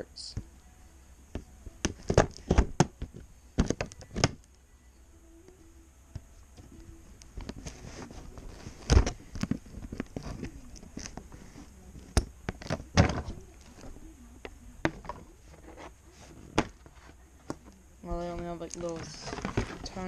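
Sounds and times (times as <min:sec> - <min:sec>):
packaging scraping and rustling: 0:18.7 - 0:20.0.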